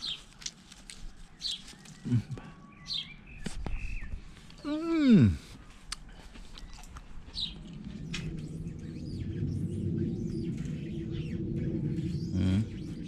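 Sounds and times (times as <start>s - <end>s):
birds chirping: 1.1s - 13.0s
low mechanical rumble: 6.0s - 13.0s.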